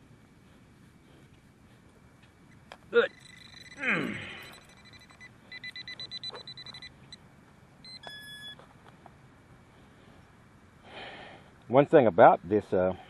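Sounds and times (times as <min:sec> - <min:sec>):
metal detector beeps: 0:02.5 - 0:07.2, 0:07.8 - 0:08.7.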